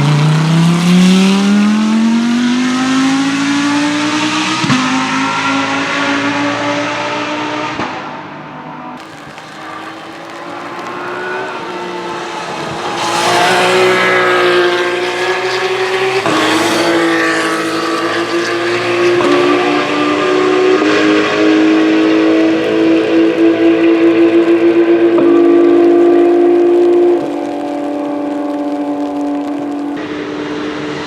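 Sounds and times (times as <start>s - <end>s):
racing car engines at high revs: 0.0s - 31.0s
tyre spray hissing on wet track: 9.0s - 19.2s.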